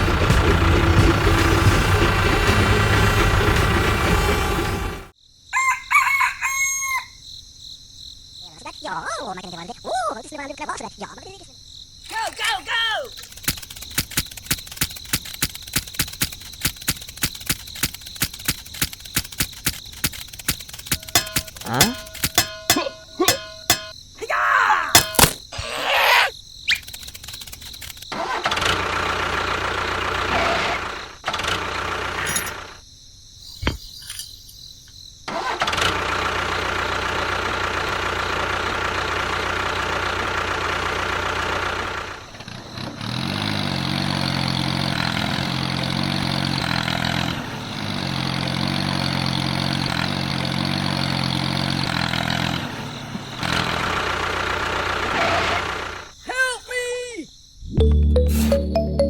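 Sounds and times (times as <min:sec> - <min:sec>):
clicks and clatter: 0:13.1 - 0:23.9, 0:26.7 - 0:28.2
small motor running: 0:13.2 - 0:22.4.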